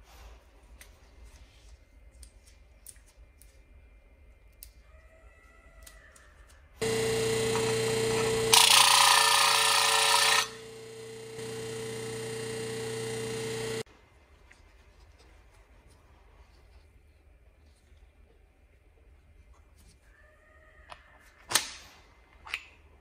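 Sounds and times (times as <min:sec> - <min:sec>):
power tool motor running: 0:06.8 - 0:13.8.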